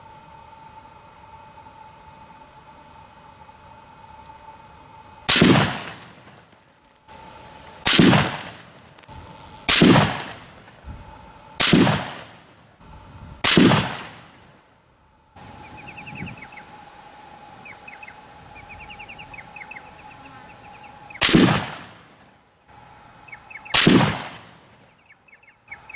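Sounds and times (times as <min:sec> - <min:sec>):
rifle shots with echo: 0:05.3 - 0:06.4, 0:07.8 - 0:09.1, 0:09.7 - 0:12.6, 0:13.4 - 0:14.6, 0:21.1 - 0:22.3, 0:23.6 - 0:24.9.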